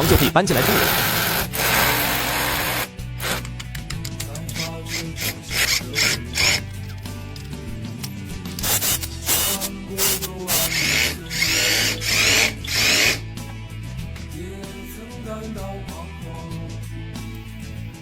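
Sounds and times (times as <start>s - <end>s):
power drill running: 0.0s - 3.4s, 4.6s - 6.6s, 8.6s - 13.2s
background music: 0.0s - 18.0s.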